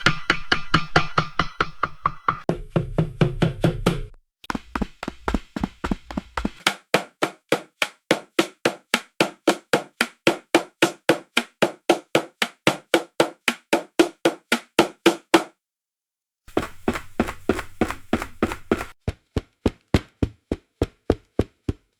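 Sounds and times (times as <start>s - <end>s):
running footsteps on wooden boards: 4.5s - 15.4s, 16.5s - 21.9s.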